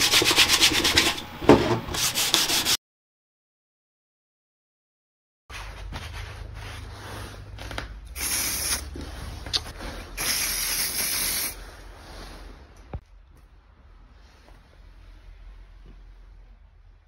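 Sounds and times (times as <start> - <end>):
aerosol spray hiss: 8.2 - 8.9, 10.2 - 11.6.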